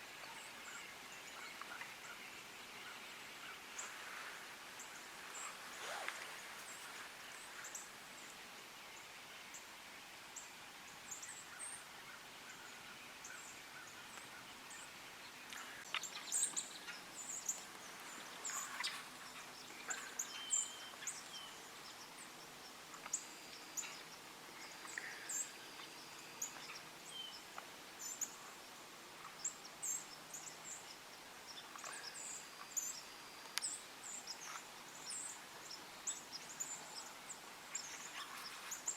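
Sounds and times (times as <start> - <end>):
birds chirping: 0.1 - 9.7, 11.0 - 38.9
thin whistled bird notes: 14.7 - 21.7.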